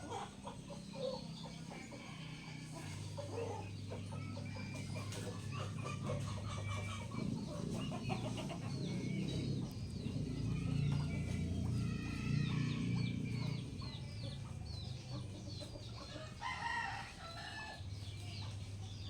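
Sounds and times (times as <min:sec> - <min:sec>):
chickens clucking: 0:00.0 - 0:19.0
bird chirping calls: 0:03.0 - 0:16.3.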